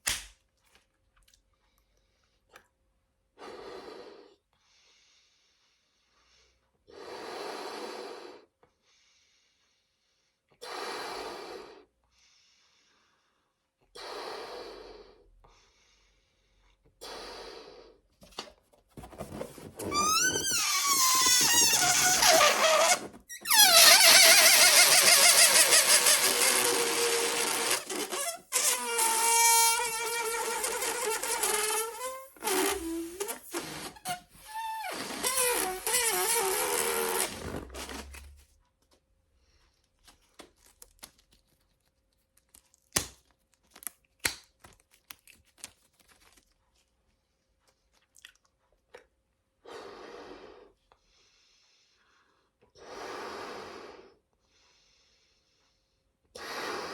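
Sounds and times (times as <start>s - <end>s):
short blowing sound: 19.1s - 38.4s
air squealing out of foil balloon: 19.3s - 38.4s
faint crinkles and clicks: 39.8s - 49.1s.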